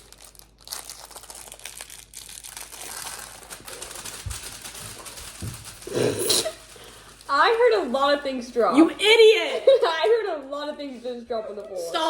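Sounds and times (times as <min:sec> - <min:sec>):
plastic crinkling: 0:00.0 - 0:12.0.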